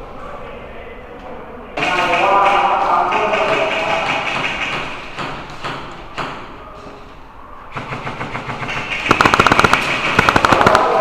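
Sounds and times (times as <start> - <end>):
fast burst of gun shots: 1.8 - 5.0, 7.8 - 11.0
rapid clicking of gun shots: 1.8 - 5.9, 7.8 - 11.0.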